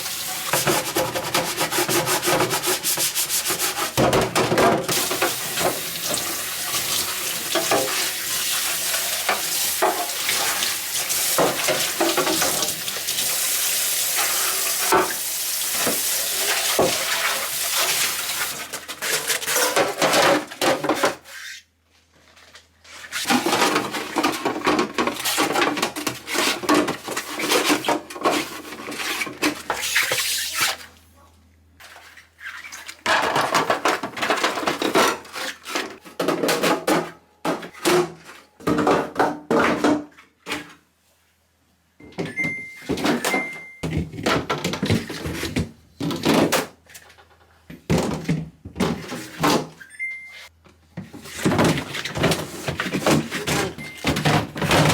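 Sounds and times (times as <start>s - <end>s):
kitchen containers clattering: 0.0s - 21.3s, 23.2s - 30.0s, 32.8s - 40.7s, 42.2s - 47.2s, 51.1s - 54.9s
short electronic beeps: 49.8s - 50.5s.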